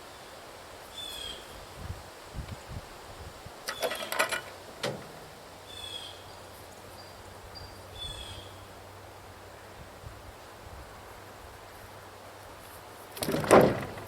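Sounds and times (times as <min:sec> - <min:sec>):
sharp knocks and clicks: 0:03.7 - 0:05.2, 0:13.2 - 0:14.0.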